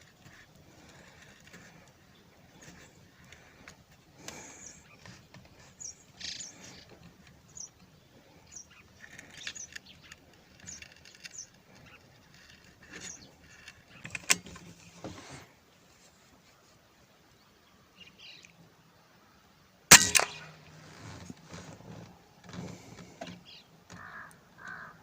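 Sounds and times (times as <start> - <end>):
birds chirping: 0.0 - 16.0, 16.8 - 21.4, 22.4 - 25.0
sharp loud snap: 19.9 - 20.7.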